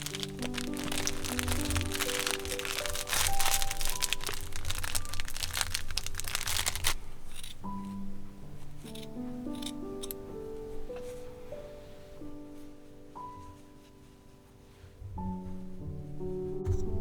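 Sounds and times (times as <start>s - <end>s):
dense crunching crackling: 0.0s - 10.3s
gentle background music: 0.0s - 17.0s.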